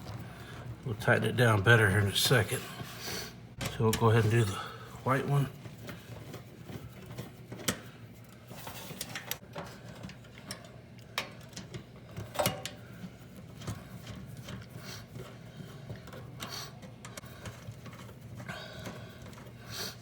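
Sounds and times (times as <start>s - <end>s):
hand tools clicking and tapping: 9.0s - 20.0s.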